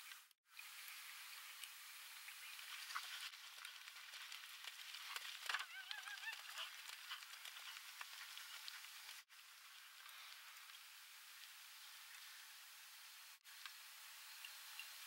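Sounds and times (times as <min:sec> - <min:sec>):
steady crackling hiss: 0:00.0 - 0:15.0.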